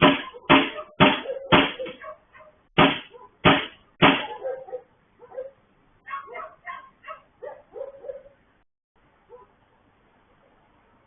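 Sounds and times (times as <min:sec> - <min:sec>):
heavy blows banging on a gate: 0:00.0 - 0:02.1, 0:02.8 - 0:04.5.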